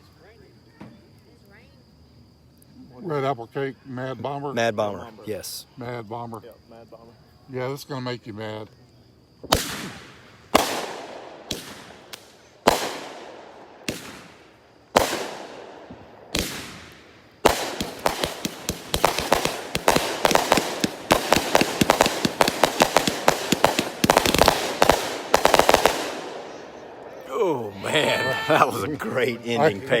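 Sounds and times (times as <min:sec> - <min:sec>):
firework bangs with echo: 0:09.4 - 0:26.6
rapid barrage of firework bangs: 0:09.4 - 0:26.6.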